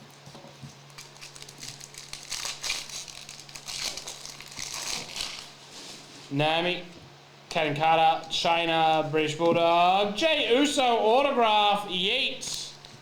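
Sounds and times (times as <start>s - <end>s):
steady low hum: 0.0s - 13.0s
card packs crinkling and rustling: 0.1s - 6.3s.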